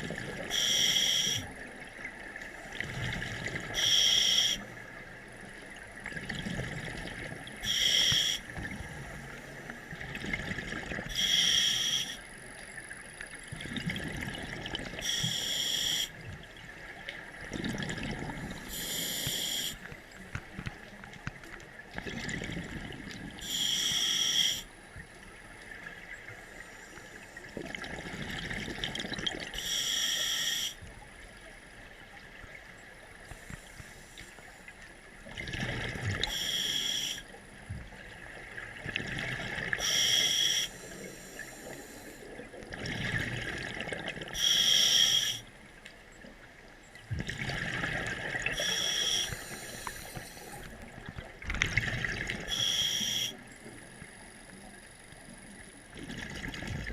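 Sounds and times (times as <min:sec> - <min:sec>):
regulator hissing inhales: 0:00.5 - 0:01.5, 0:07.6 - 0:08.4, 0:15.0 - 0:16.1, 0:18.7 - 0:19.9, 0:23.4 - 0:24.7, 0:29.6 - 0:30.8, 0:44.4 - 0:45.4, 0:48.6 - 0:50.7.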